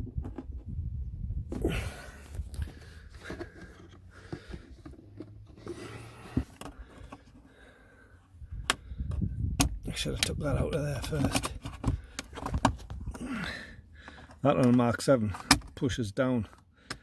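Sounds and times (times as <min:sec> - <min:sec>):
plastic panel being handled: 0:00.0 - 0:00.8, 0:01.5 - 0:07.7, 0:08.5 - 0:13.3.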